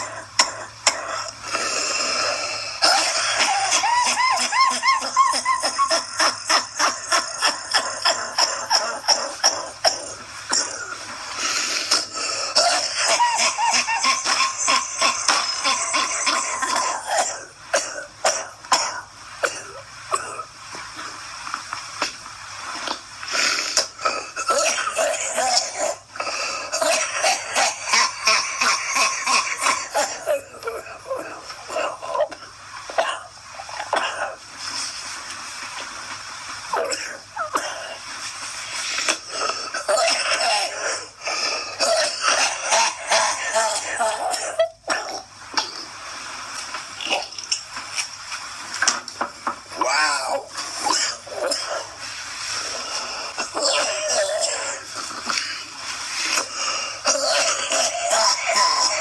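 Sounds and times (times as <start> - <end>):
wheezing gasping breaths: 22.7 - 35.1, 36.6 - 44.4.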